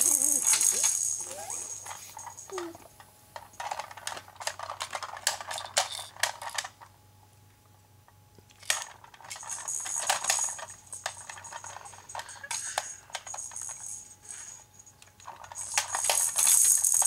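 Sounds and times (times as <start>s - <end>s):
baby's rattle shaking: 0.0s - 2.8s, 9.2s - 17.0s.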